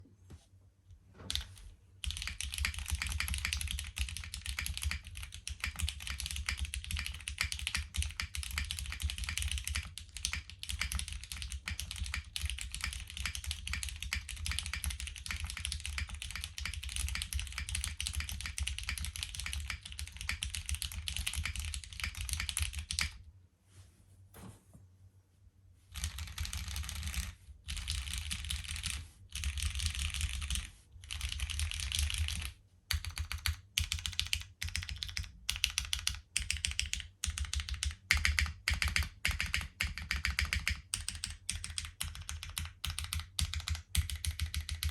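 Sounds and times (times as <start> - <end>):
fast mechanical keyboard typing: 1.3 - 23.2, 26.0 - 44.9.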